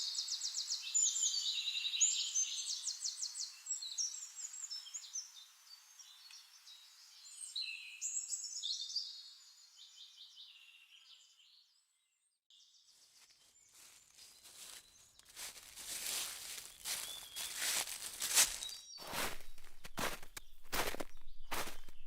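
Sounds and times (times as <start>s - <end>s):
nightingale singing: 12.5s - 22.0s
crackling rustle: 13.0s - 22.0s.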